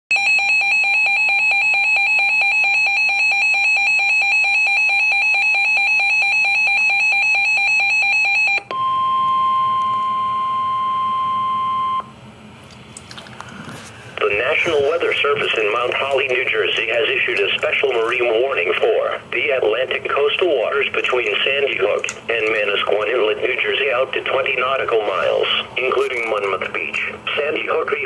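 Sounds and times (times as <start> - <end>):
pulsing buzzy electronic alarm: 0.1 - 12.1.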